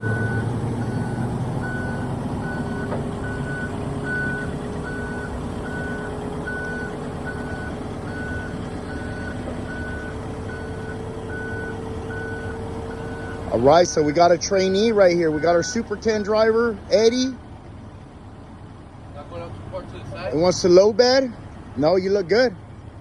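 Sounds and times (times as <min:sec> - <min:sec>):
backup alarm beeping: 0:00.0 - 0:13.6, 0:14.8 - 0:16.0
diesel engine running: 0:00.0 - 0:23.0.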